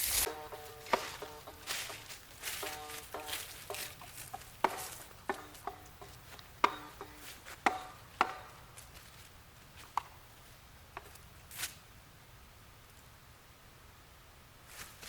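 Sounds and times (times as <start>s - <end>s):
plucked string notes: 0.2s - 8.7s.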